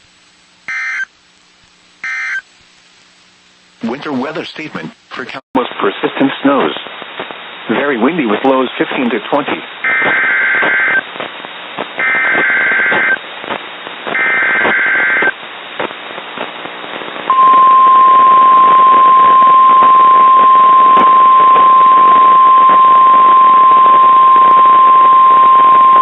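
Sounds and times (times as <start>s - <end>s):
screechy digital data bursts: 0.7s - 1.1s, 2.0s - 2.4s, 9.8s - 11.0s, 12.0s - 13.2s, 14.2s - 15.3s
steady alarm tone: 0.7s - 1.1s, 2.0s - 2.4s, 12.0s - 13.2s, 17.3s - 26.0s
radio hiss: 1.9s - 26.0s.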